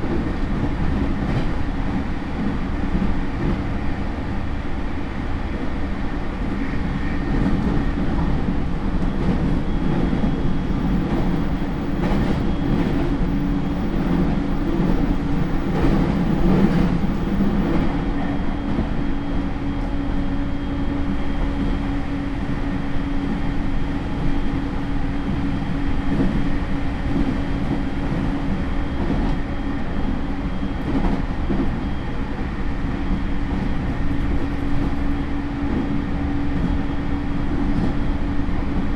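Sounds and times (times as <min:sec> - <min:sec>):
wheels rumbling on rail: 0:00.0 - 0:38.9
traction motor hum: 0:10.7 - 0:17.8
faint high tones: 0:10.7 - 0:17.9.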